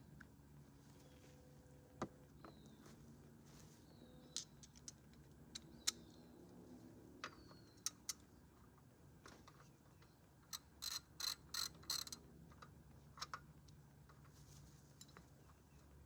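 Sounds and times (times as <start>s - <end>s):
hand wrench clicking: 10.6s - 12.2s.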